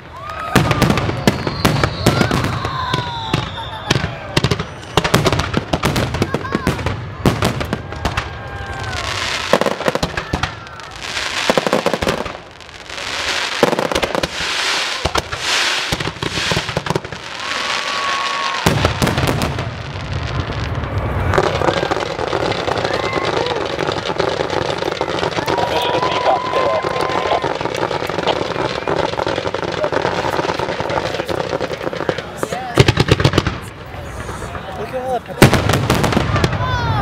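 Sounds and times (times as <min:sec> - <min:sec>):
firework crackling: 0:00.0 - 0:37.0
firework shells bursting: 0:07.4 - 0:34.4.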